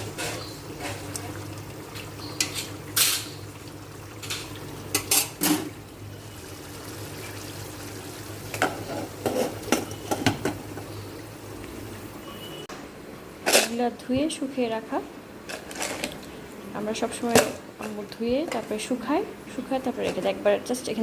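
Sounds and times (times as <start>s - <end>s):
dishes and utensils clattering: 2.0s - 3.4s, 4.2s - 5.8s, 8.5s - 10.6s.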